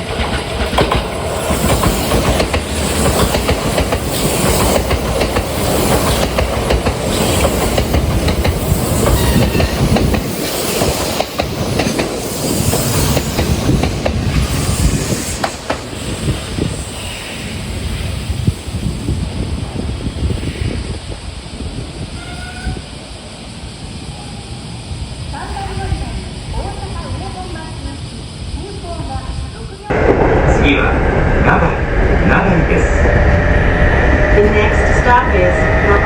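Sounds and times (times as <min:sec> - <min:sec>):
wheels clacking over rail joints: 0:00.0 - 0:14.5
train rumbling past: 0:00.0 - 0:36.0.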